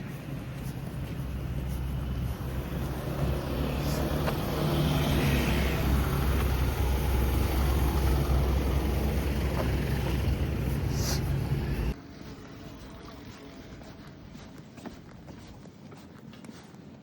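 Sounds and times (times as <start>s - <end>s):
vehicle rumble: 0.0s - 15.7s.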